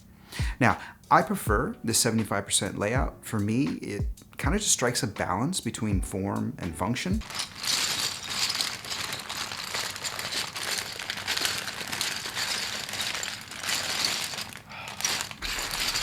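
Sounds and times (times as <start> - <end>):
plastic packaging crinkling: 7.2 - 16.0.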